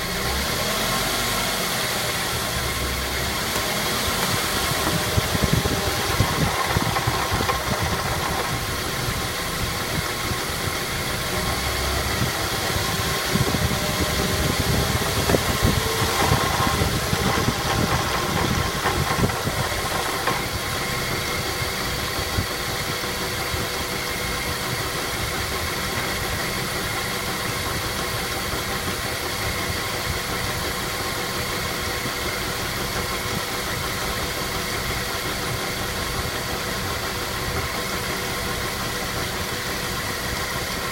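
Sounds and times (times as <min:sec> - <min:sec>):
car engine running: 0:00.0 - 0:40.9
transmission knocking: 0:03.5 - 0:11.4, 0:12.1 - 0:21.4.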